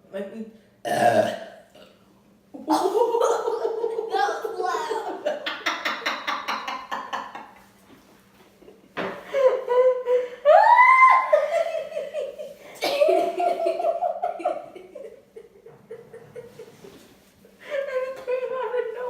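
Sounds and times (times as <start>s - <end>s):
person laughing heartily: 8.6s - 17.0s.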